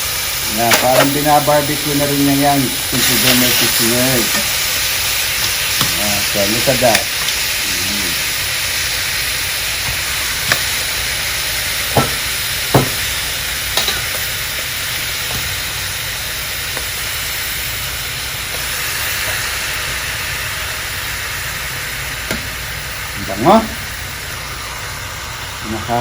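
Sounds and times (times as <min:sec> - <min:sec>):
meat sizzling in a pan: 0:00.0 - 0:26.0
sharp knocks: 0:12.0 - 0:13.0.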